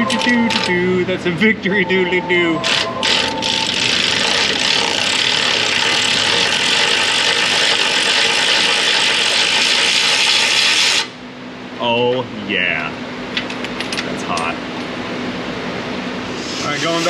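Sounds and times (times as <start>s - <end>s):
air ratchet running: 0.0s - 0.8s, 2.6s - 11.2s.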